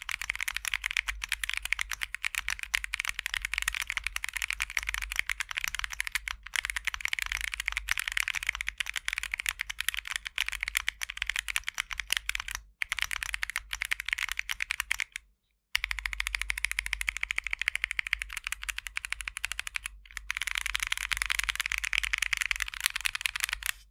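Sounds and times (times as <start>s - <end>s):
mechanical keyboard typing: 0.0s - 15.2s, 15.8s - 23.9s.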